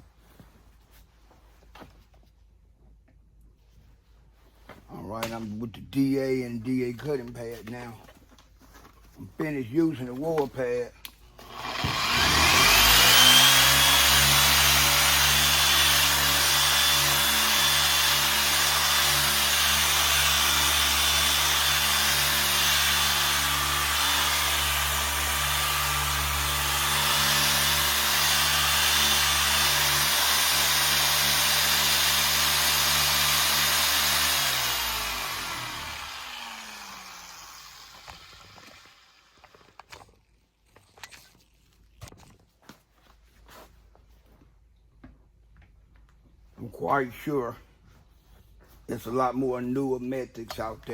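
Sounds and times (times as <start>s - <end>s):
polisher spinning: 11.4s - 39.9s.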